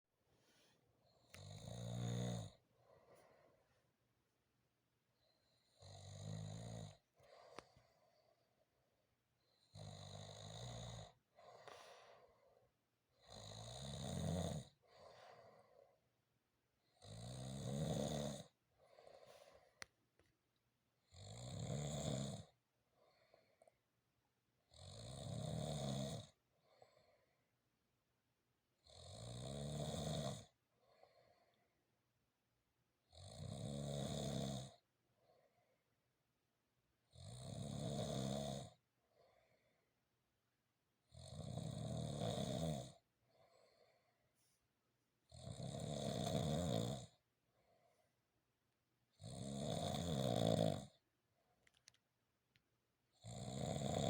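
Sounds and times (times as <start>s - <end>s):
quiet breathing: 0.3s - 4.3s, 5.1s - 13.6s, 14.5s - 17.0s, 18.2s - 20.4s, 22.5s - 24.0s, 26.3s - 27.6s, 30.5s - 31.9s, 35.0s - 36.0s, 38.8s - 40.1s, 42.9s - 44.8s, 47.1s - 48.3s
person snoring: 1.2s - 3.3s, 5.7s - 7.8s, 9.7s - 12.3s, 13.2s - 15.8s, 17.0s - 19.6s, 21.1s - 22.5s, 28.9s - 31.5s, 33.2s - 34.8s, 37.2s - 39.4s, 41.1s - 44.0s, 45.3s - 47.2s, 49.2s - 51.0s, 53.2s - 54.0s.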